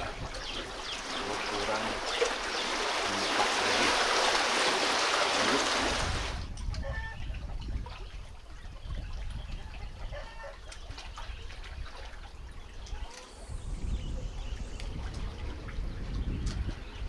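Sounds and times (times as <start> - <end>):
waves washing against shore: 0.0 - 6.5
wind buffeting microphone: 0.0 - 17.0
faint chicken clucks: 6.8 - 8.1, 9.4 - 11.1.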